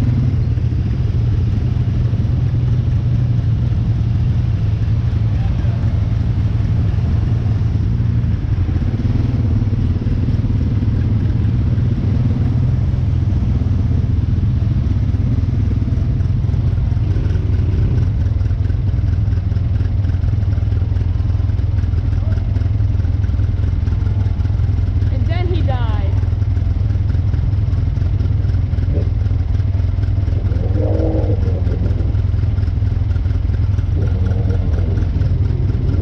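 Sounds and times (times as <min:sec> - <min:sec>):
off-road vehicle engine running: 0:00.0 - 0:36.0
vehicle rattle: 0:15.3 - 0:36.0.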